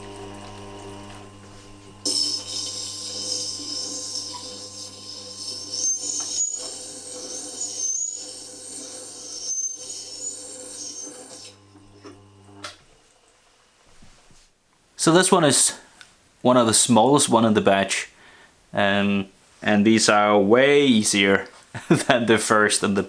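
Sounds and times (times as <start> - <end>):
sharpener motor humming: 0.0 - 12.3
chisel grinding scrape: 0.8 - 11.6.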